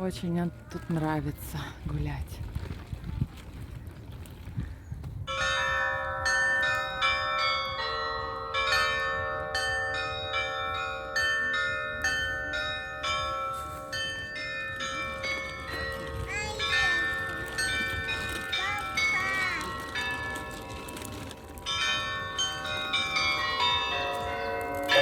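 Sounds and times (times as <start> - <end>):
church bells ringing: 5.3 - 25.0.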